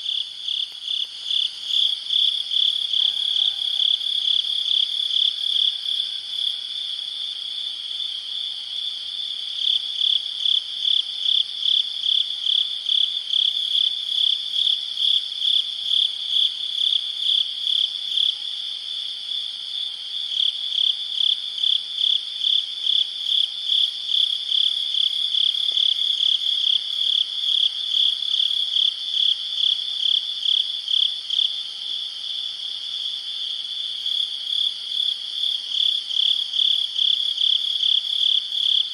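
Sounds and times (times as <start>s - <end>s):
cricket chirping loudly: 0.0s - 8.1s
crickets trilling: 0.0s - 38.9s.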